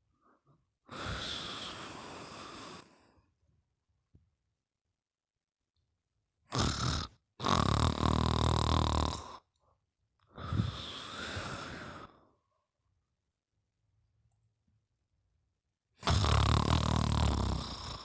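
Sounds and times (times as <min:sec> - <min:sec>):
snoring: 0:06.5 - 0:09.5, 0:10.4 - 0:12.2, 0:16.0 - 0:18.0.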